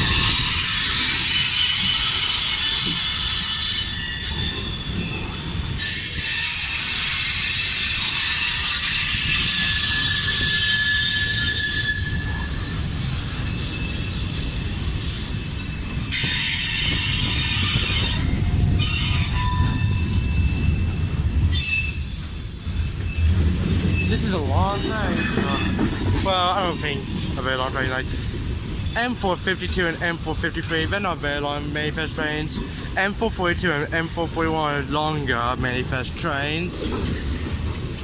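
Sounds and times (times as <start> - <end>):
train wheels squealing: 0.0 - 30.7.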